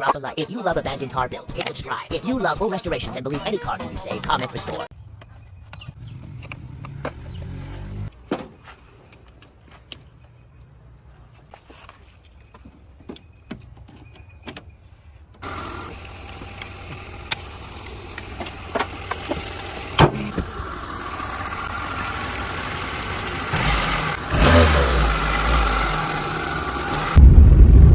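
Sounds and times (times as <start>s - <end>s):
car engine starting and running: 5.7s - 8.1s, 15.4s - 27.9s.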